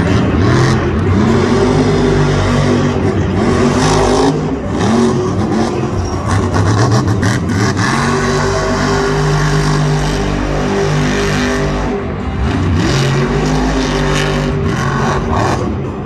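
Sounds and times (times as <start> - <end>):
truck engine revving hard: 0.0 - 16.0.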